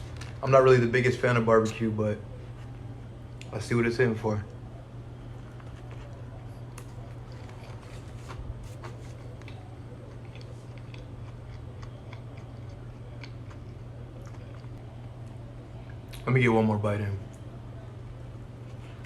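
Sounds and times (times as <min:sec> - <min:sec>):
steady low hum: 0:00.0 - 0:19.0
person chewing food: 0:05.4 - 0:15.4.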